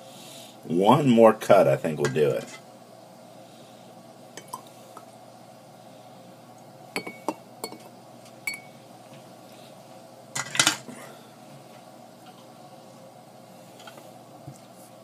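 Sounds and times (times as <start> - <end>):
glassware clinking: 7.0 - 7.9.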